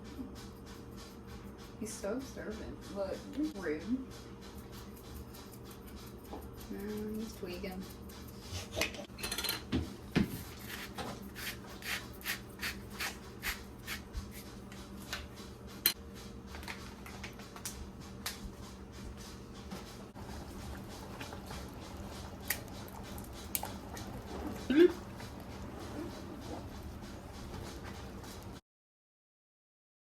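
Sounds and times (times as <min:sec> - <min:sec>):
utensil clinking against a dish: 0:09.1 - 0:11.0, 0:20.2 - 0:28.5.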